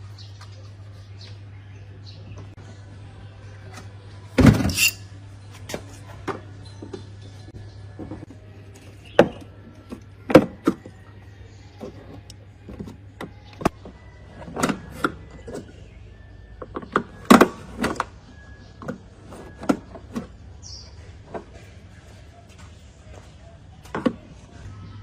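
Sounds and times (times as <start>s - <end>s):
metal tools clinking: 4.7s - 5.0s.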